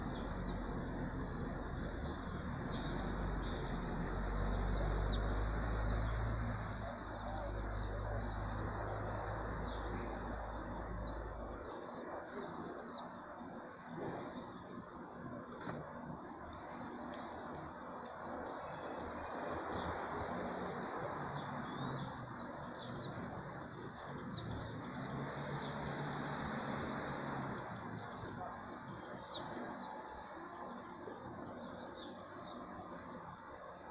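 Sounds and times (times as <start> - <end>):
low steady hum: 0.0 - 25.0
birds chirping and calling: 0.0 - 25.8, 27.4 - 33.9.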